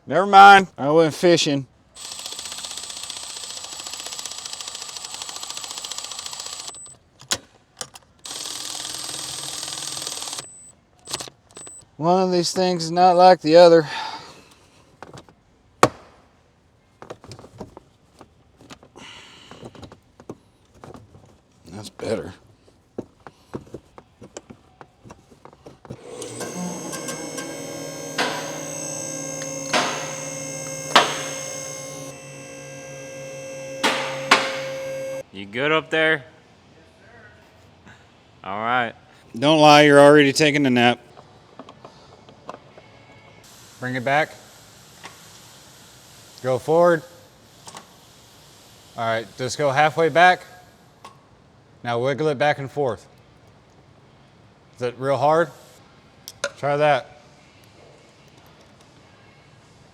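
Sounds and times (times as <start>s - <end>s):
power ratchet whirring and clicking: 2.0s - 6.9s, 8.3s - 11.8s, 26.0s - 35.2s
steady electrical hum: 26.0s - 35.2s
sharp clicks: 26.2s - 35.2s.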